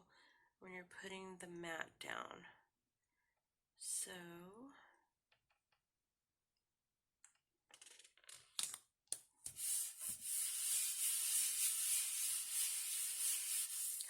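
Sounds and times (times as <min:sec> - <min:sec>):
rubbing across paper: 0:09.5 - 0:14.0.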